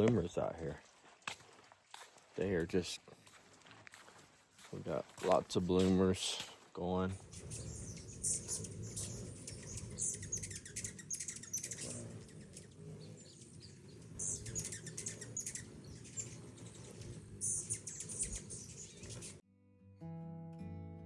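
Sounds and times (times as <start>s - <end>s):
hummingbirds chirping: 7.0s - 19.4s.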